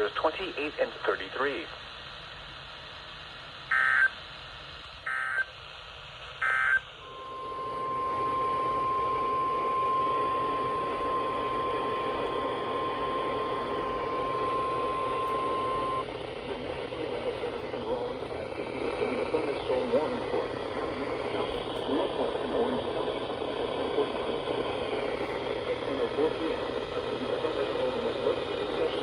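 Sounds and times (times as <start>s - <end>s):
static hiss: 0.0s - 29.0s
loud data burst tones: 3.7s - 4.3s, 5.0s - 5.6s, 6.3s - 29.0s
steady single alert tone: 7.0s - 16.0s.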